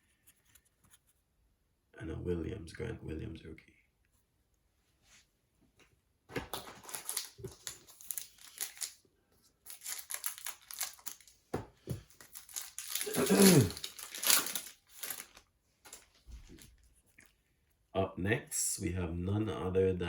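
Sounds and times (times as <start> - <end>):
wrapper crinkling and tearing: 6.5 - 9.0, 9.6 - 11.4, 12.0 - 17.2.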